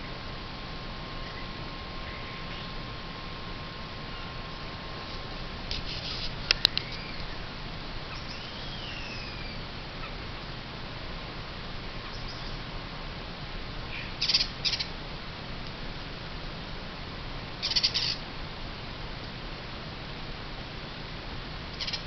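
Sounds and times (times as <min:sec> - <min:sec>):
birds chirping: 0:01.2 - 0:03.1, 0:06.2 - 0:10.2, 0:12.0 - 0:12.8, 0:13.9 - 0:14.9, 0:17.6 - 0:18.2, 0:21.7 - 0:22.0
soft rising and falling whistle: 0:08.2 - 0:09.6.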